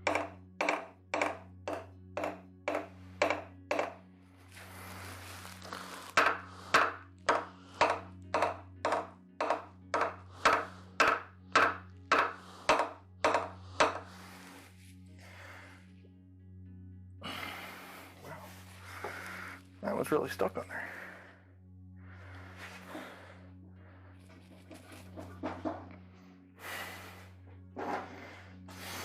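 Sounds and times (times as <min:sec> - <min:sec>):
hammer tapping on metal: 0:00.0 - 0:04.0, 0:06.2 - 0:14.1.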